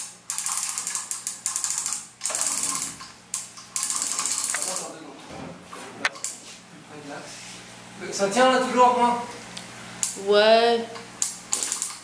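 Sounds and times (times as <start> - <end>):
ratchet hoist clicking: 0.0 - 4.9, 11.2 - 12.0.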